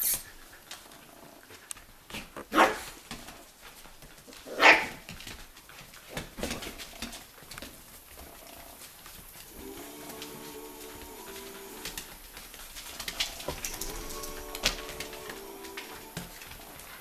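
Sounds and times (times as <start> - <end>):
puppies barking: 2.1 - 3.0, 4.3 - 5.2, 8.5 - 17.0
puppies yipping: 8.5 - 17.0.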